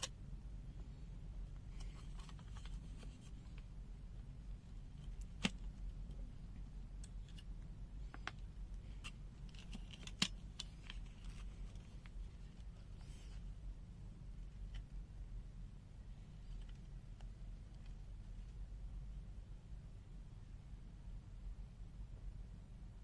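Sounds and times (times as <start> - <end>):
faint low hum: 0.0 - 23.0
clicks and rattles of handled parts: 1.7 - 3.6, 7.0 - 12.7.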